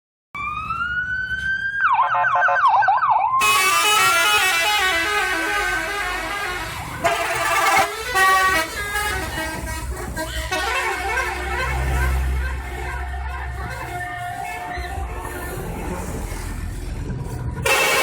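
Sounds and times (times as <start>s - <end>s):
bus musical air horn: 3.4s - 15.2s, 17.6s - 18.0s.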